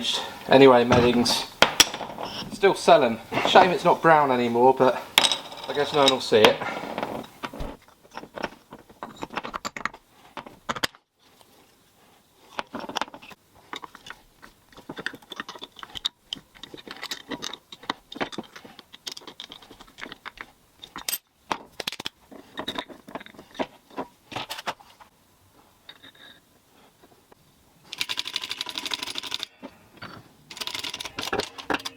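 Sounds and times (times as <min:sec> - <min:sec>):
metal parts clinking and scraping: 0:05.2 - 0:11.0, 0:12.5 - 0:25.0, 0:25.9 - 0:26.4, 0:27.9 - 0:31.9.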